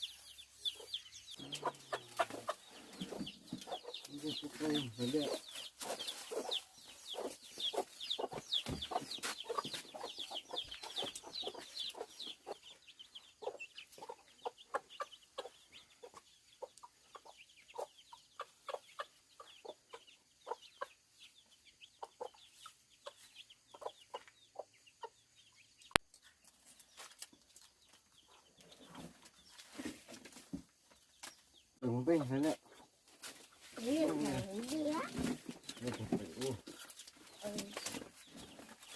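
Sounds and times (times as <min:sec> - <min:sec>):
chickens clucking and chirping: 0:00.0 - 0:38.9.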